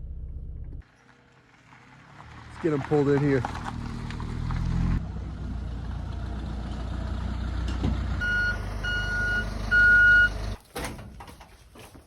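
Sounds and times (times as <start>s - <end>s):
vehicle engine low rumble: 0.0s - 10.6s
short electronic beeps: 8.2s - 10.4s.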